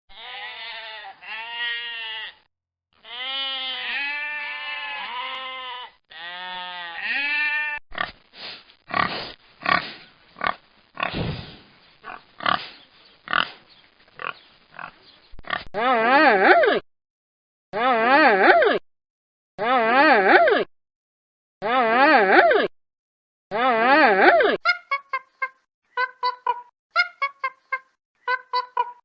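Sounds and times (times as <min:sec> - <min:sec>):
sheep bleating: 0:00.1 - 0:07.8
pigs grunting: 0:08.9 - 0:13.6.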